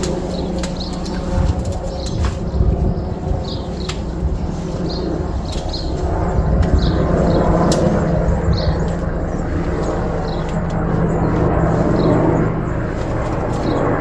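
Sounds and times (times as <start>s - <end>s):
loud steady low rumble: 0.0s - 14.0s
sharp clicks: 7.5s - 8.2s.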